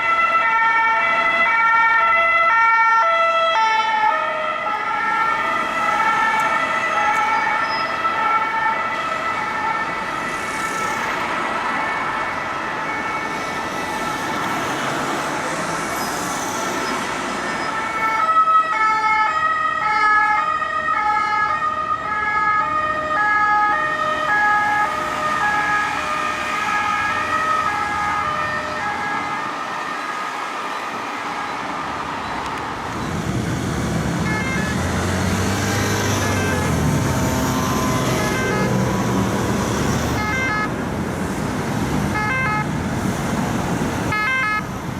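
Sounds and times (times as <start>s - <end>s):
ambulance siren: 0.0s - 44.9s
road traffic: 0.0s - 44.9s
vehicle engine: 31.8s - 44.2s.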